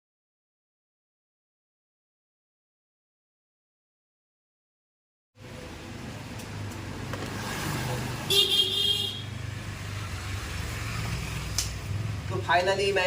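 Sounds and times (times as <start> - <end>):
road traffic: 5.4 - 13.0
vehicle horn toot: 8.3 - 9.3.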